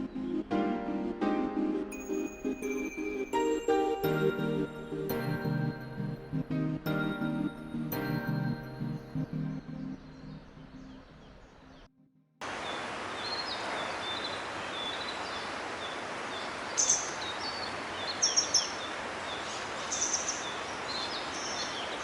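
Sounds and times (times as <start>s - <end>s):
background music: 0.0s - 11.2s
wild birds calling: 12.5s - 22.0s.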